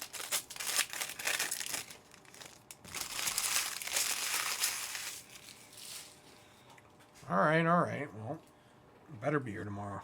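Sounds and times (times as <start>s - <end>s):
card pack wrappers crinkling: 0.0s - 6.3s.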